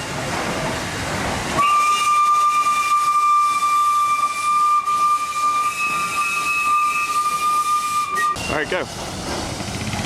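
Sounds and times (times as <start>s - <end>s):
steam locomotive whistle blast: 1.6s - 8.8s.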